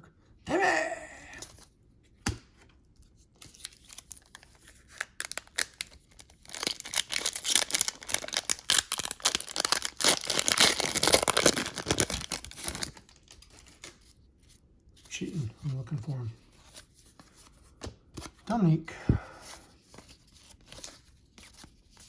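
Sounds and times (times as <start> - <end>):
wrapper tearing and crinkling: 3.4 - 14.0.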